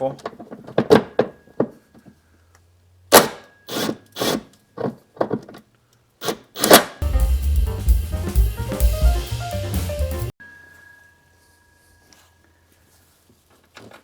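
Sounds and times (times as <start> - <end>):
music with drums: 7.0 - 10.3.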